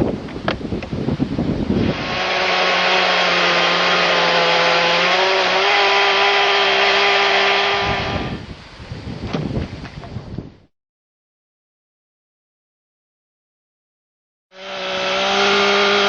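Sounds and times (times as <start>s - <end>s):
chainsaw cutting wood: 1.8s - 8.4s, 14.5s - 16.0s.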